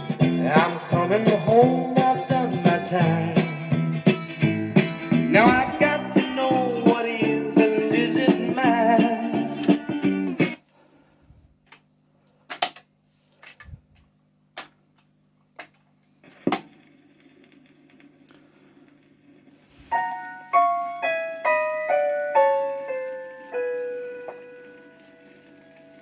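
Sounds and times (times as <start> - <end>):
piano notes from record: 4.4 - 10.6, 19.8 - 26.0
record player clicks and knocks: 15.6 - 16.9.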